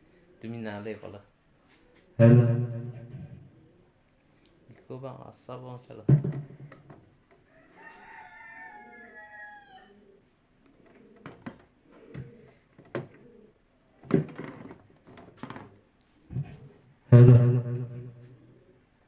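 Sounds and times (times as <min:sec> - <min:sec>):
loud knock: 0:02.2 - 0:03.4, 0:17.2 - 0:18.2
rooster crowing: 0:07.5 - 0:10.0.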